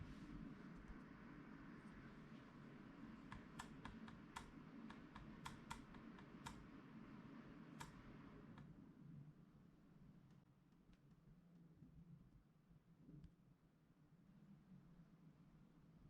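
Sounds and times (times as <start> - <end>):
low steady hum: 0.0 - 16.0
computer keys clicking: 3.3 - 6.6.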